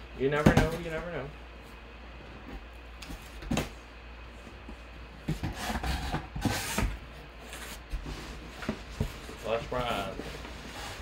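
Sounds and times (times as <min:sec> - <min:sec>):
cardboard rubbing and scraping: 0:05.4 - 0:11.0.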